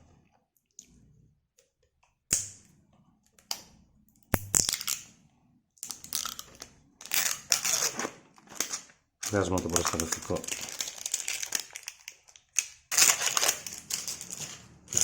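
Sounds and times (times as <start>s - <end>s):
plastic packaging crinkling: 5.9s - 15.0s.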